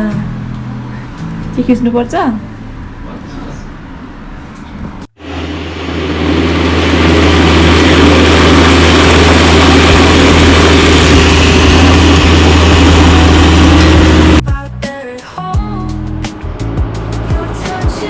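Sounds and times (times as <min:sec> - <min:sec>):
blender motor running: 0:05.2 - 0:14.4.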